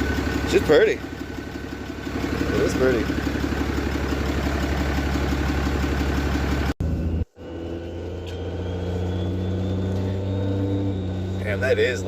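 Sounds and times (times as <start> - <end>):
diesel truck engine idling: 0.0 - 12.0
faint high whine rising: 6.8 - 12.0.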